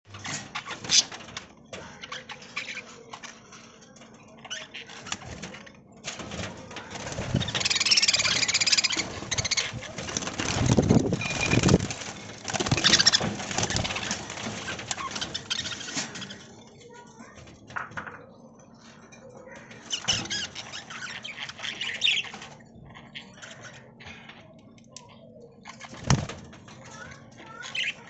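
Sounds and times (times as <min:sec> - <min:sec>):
budgerigars chattering and chirping: 0:07.2 - 0:11.9, 0:12.6 - 0:14.2, 0:19.8 - 0:24.3.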